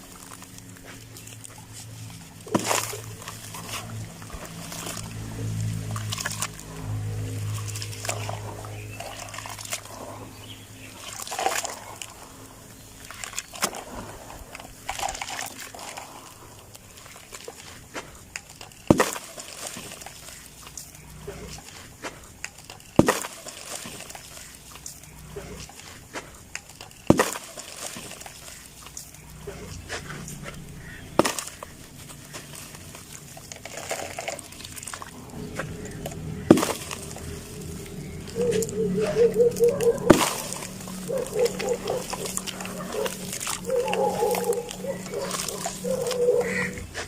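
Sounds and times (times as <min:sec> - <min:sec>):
gritty crackling: 0:00.0 - 0:47.0
sand-cement crumbling and crunching: 0:13.4 - 0:39.2, 0:39.9 - 0:47.0
sharp crack: 0:31.1 - 0:32.5.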